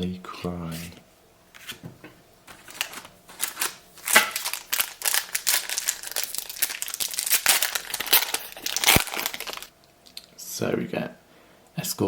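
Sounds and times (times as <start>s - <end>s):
plastic wrapper crinkling: 2.5s - 10.2s.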